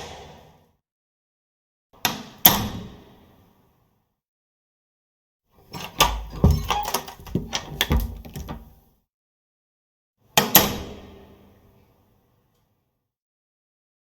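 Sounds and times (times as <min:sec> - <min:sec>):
door handle and latch rattling: 0:05.8 - 0:08.8.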